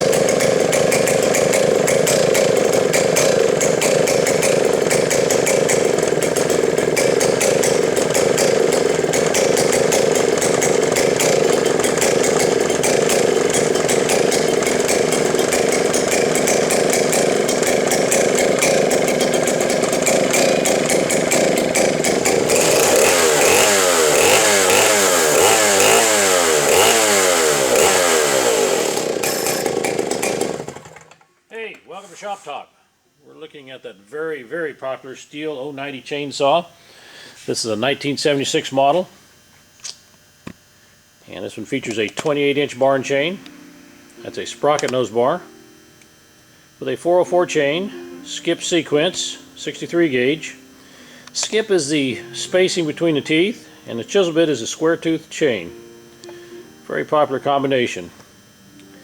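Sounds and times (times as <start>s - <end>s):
chainsaw engine revving: 0.0s - 31.3s, 47.0s - 58.6s.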